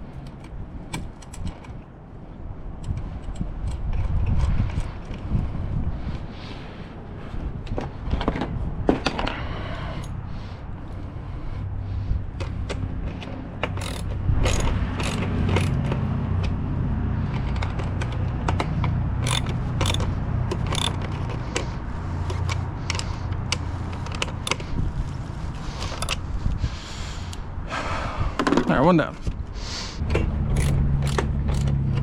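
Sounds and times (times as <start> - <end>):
ratchet wrench clicking: 13.6 - 16.0, 17.6 - 21.7, 25.8 - 26.2, 30.5 - 32.0.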